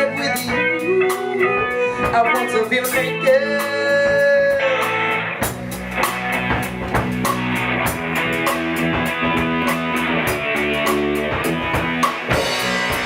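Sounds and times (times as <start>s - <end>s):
instrumental music with steady beat: 0.0s - 13.0s.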